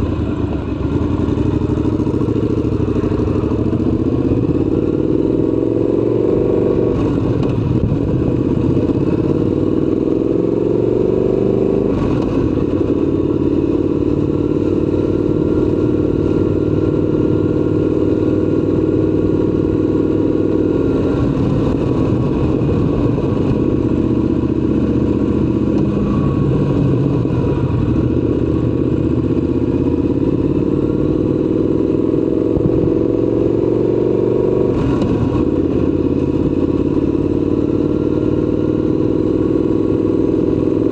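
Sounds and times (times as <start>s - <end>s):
motorcycle engine running: 0.0s - 40.9s.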